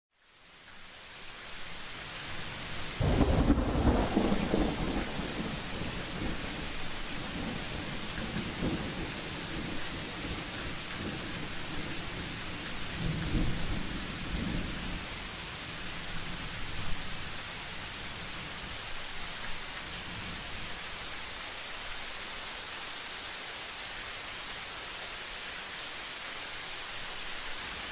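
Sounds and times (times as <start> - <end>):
rain hiss: 0.1 - 27.9
thunder rumbling: 3.0 - 15.0.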